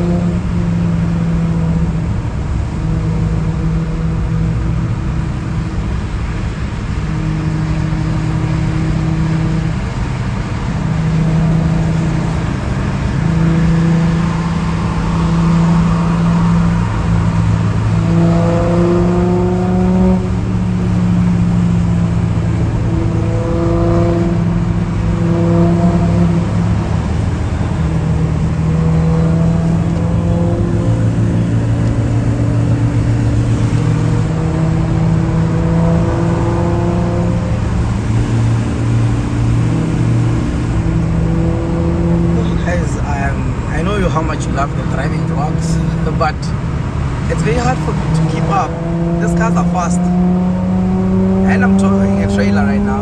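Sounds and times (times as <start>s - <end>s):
car engine droning: 0.0s - 53.0s
road noise: 0.0s - 53.0s.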